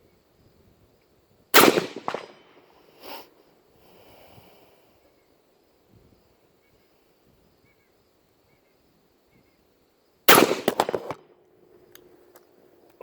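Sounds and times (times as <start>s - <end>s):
rifle shot with echoes: 1.6s - 2.7s, 10.3s - 11.3s.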